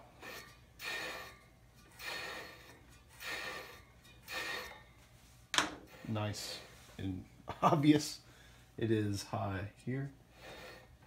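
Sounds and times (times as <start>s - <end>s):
spinning wheel swishing rub: 0.0s - 7.0s.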